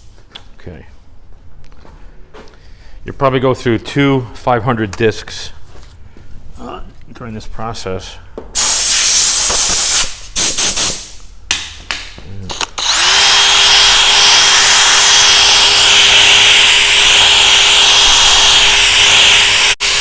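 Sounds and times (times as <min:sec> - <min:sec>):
hissing blasts of air: 0:08.6 - 0:11.2
drill whining: 0:12.5 - 0:20.0.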